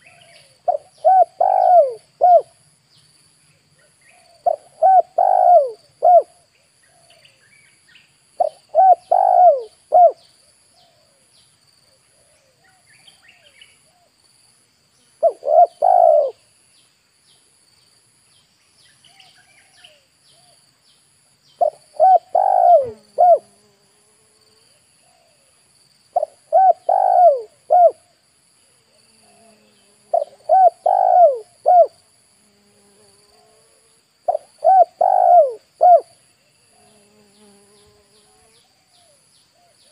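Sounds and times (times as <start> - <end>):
insect drone with pulsing buzz: 0.0 - 39.9
doves cooing: 0.7 - 2.5, 4.2 - 6.3, 8.4 - 10.2, 15.2 - 16.4, 21.6 - 23.6, 26.2 - 28.0, 29.4 - 32.0, 33.7 - 36.1
faint small bird chirps: 15.0 - 23.5.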